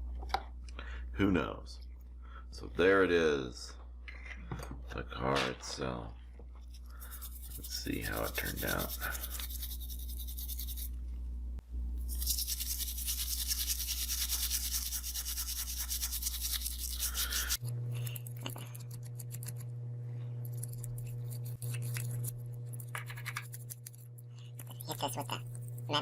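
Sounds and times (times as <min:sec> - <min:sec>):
scrubbing hiss: 0:06.7 - 0:11.0, 0:12.0 - 0:18.2
small electric motor buzzing: 0:12.0 - 0:19.8, 0:20.4 - 0:26.0.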